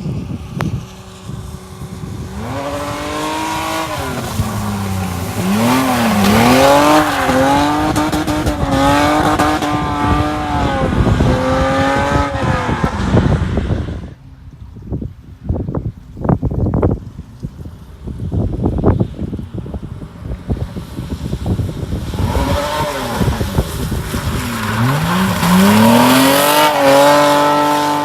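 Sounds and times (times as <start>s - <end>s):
tyre noise on wet road: 0.0s - 28.0s
car engine revving hard: 1.3s - 14.1s, 22.1s - 28.0s.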